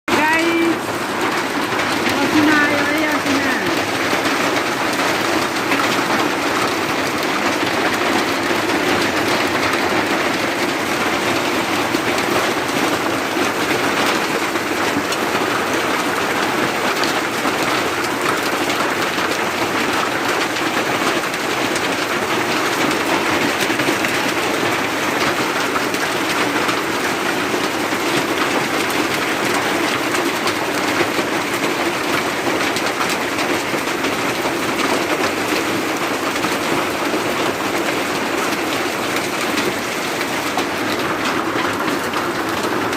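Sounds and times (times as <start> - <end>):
rain falling steadily: 0.1 - 42.9.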